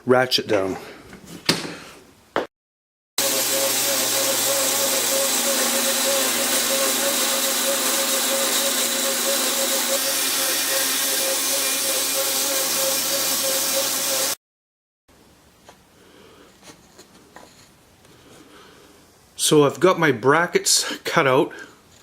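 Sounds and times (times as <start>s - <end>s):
bandsaw running: 3.2s - 14.4s.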